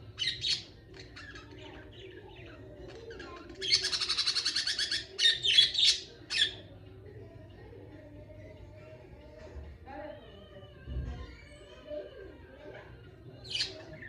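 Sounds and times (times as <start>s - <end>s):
budgerigars chirping and chattering: 0.1s - 6.6s, 13.3s - 14.0s.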